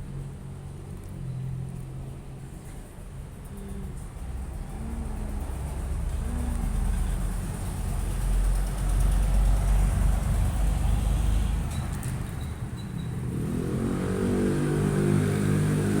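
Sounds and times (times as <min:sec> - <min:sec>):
motor vehicle rumble: 0:00.0 - 0:16.0
pitched engine hum: 0:00.0 - 0:16.0.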